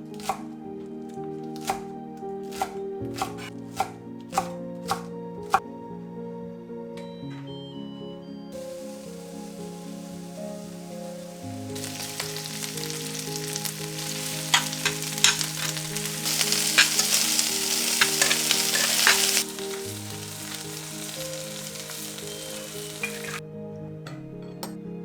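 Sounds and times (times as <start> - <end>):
soft background music: 0.0 - 25.0
food sizzling in a frying pan: 8.6 - 23.4
utensil clicking against pan: 14.4 - 17.3, 17.9 - 19.9.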